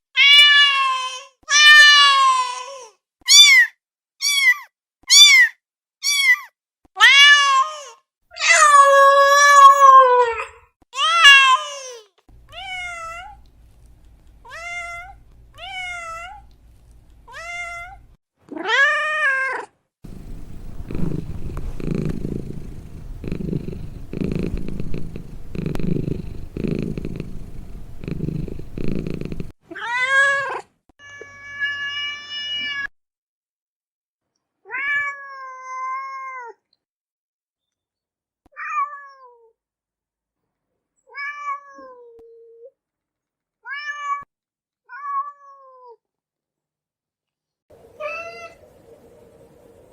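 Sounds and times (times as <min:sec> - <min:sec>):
cat purring: 0:20.1 - 0:29.5.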